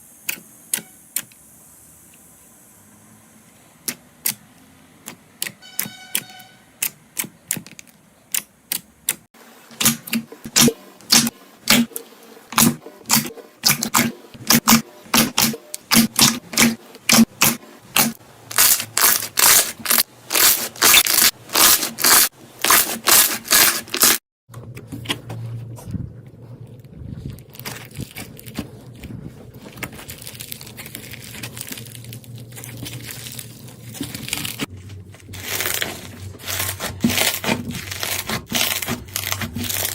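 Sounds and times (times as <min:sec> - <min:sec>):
slime popping and crackling: 0:27.2 - 0:39.9.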